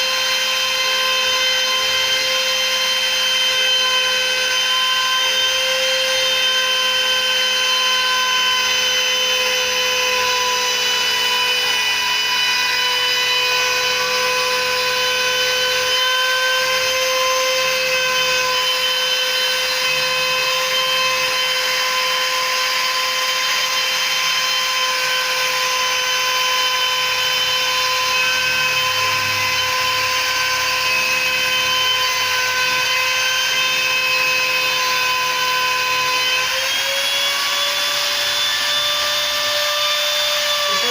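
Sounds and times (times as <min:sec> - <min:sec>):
router bit cutting: 0:00.0 - 0:40.9
router spindle motor whining: 0:00.0 - 0:40.9.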